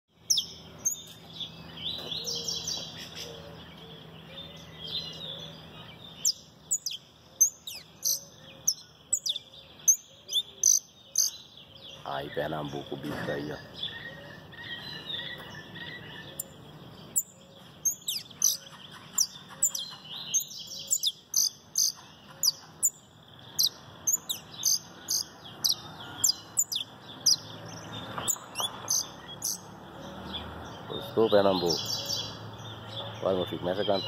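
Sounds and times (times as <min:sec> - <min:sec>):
canary singing: 0:00.1 - 0:34.0.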